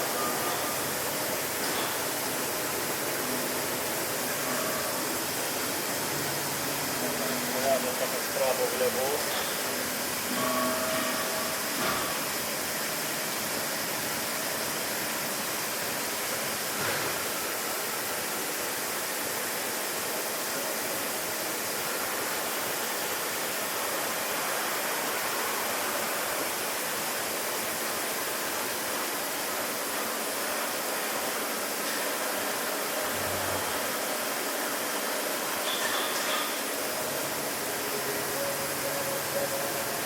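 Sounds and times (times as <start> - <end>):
machine axis whine: 0.0 - 15.8.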